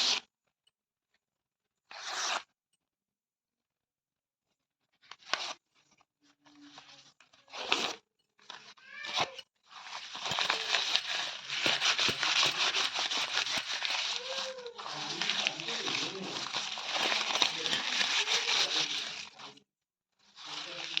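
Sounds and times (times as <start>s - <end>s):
paper tearing: 1.9s - 2.4s, 6.7s - 19.6s, 20.3s - 21.0s.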